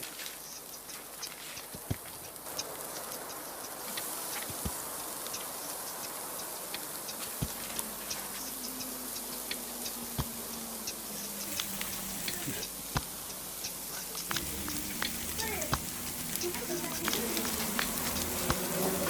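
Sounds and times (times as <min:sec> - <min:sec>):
wood fire crackling: 0:00.0 - 0:08.6, 0:11.4 - 0:19.0
sharp pops from fire: 0:11.4 - 0:13.1, 0:14.3 - 0:19.0.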